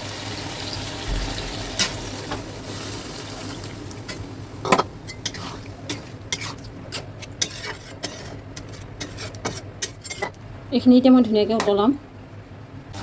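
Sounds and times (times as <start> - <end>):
curry sizzling in a pan: 0.0 - 10.0
spoon scraping a pan: 4.1 - 10.4.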